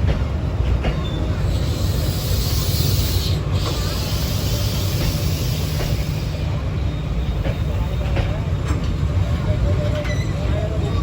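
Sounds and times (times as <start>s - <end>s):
hiss: 1.3s - 6.6s.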